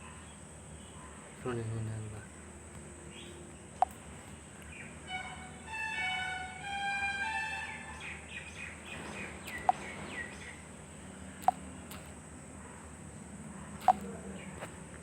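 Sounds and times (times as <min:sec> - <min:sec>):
sharp clicks: 0:03.8 - 0:04.0, 0:09.4 - 0:10.0, 0:11.4 - 0:12.2, 0:13.8 - 0:14.1.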